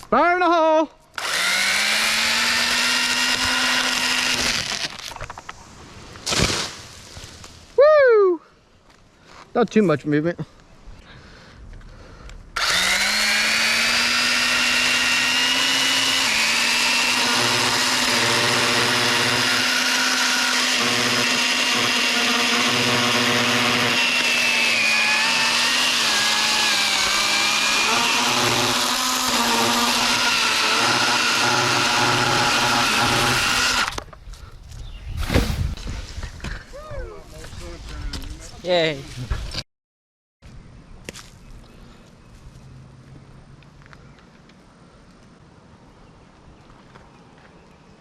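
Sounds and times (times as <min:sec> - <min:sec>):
electric saw cutting tree trunk: 0:01.2 - 0:05.2, 0:12.6 - 0:34.1.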